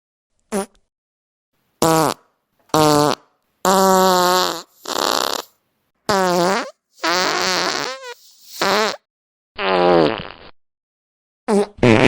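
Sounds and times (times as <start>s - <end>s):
fart sound effects: 1.8s - 5.5s, 6.1s - 10.6s, 11.5s - 12.0s.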